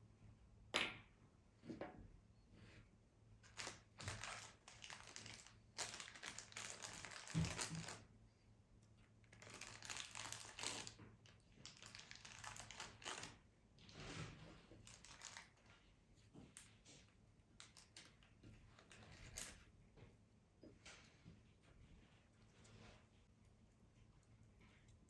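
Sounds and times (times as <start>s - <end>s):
rustling and crinkling: 3.4s - 8.1s, 9.3s - 20.1s.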